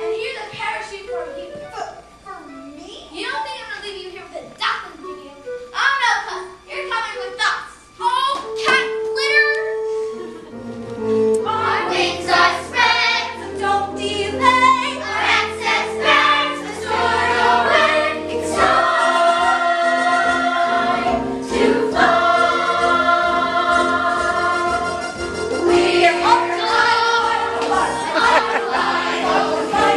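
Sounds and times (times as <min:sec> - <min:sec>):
instrumental accompaniment: 0:04.4 - 0:29.9
group of voices singing: 0:11.4 - 0:29.9.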